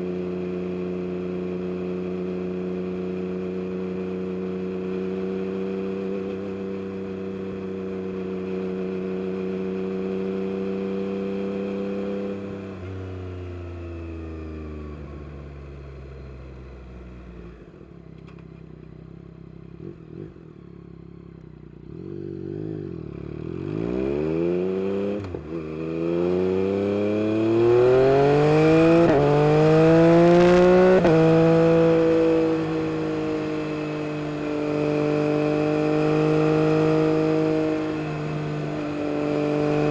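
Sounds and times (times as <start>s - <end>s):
motorcycle engine revving: 19.6s - 39.9s.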